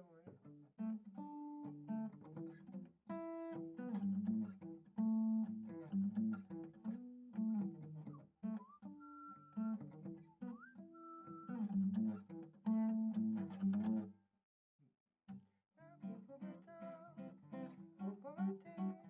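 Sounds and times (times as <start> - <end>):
plucked acoustic guitar: 0.0 - 14.1, 15.8 - 19.0
man singing nonsense syllables: 15.8 - 17.3, 18.1 - 19.0.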